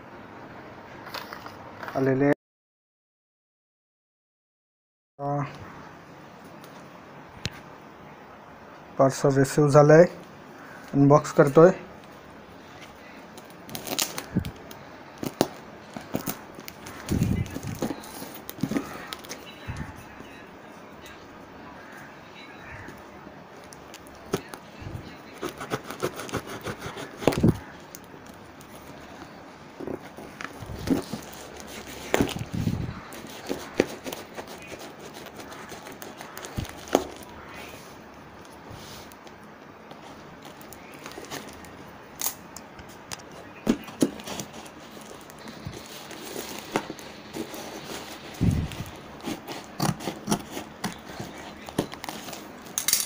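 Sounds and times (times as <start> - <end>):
packaging clicks and crackles: 12.7 - 20.3, 22.8 - 53.0
tapping and knocks on parcel: 43.6 - 44.6.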